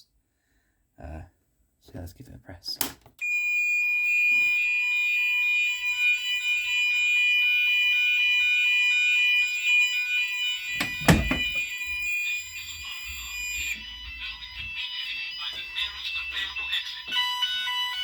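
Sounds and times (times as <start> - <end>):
high-pitched fire alarm tone: 3.2 - 18.0
lower pulsing alarm tones: 3.2 - 18.0
loud knock: 10.8 - 11.6.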